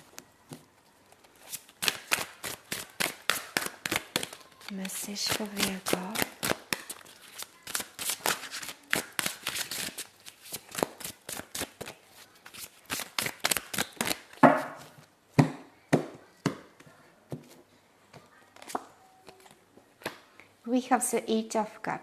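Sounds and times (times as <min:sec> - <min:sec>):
cards being shuffled: 0:00.0 - 0:15.1, 0:18.6 - 0:20.2.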